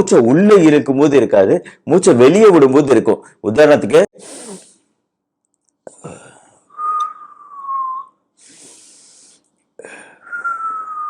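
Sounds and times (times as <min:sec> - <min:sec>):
man breathing with wheeze: 0:08.4 - 0:10.5.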